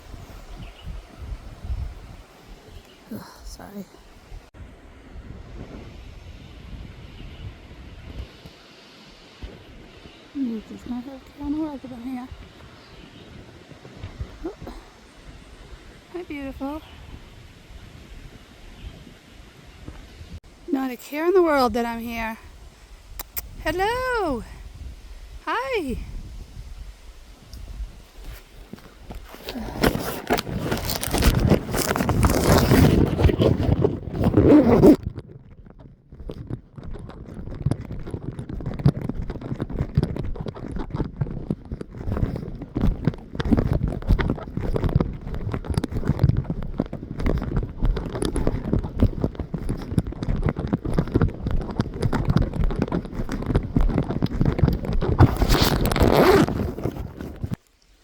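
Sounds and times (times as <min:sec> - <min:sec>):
wind noise: 0:00.0 - 0:58.0
scraping and rustling on microphone: 0:09.4 - 0:19.2, 0:25.8 - 0:58.0.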